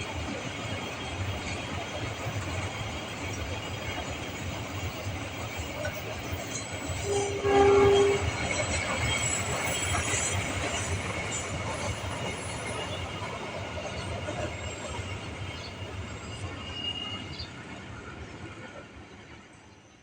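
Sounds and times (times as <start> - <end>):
passing train rumble: 0.0 - 19.9
wheels squealing on rails: 0.1 - 18.9
train horn blast: 7.0 - 8.7.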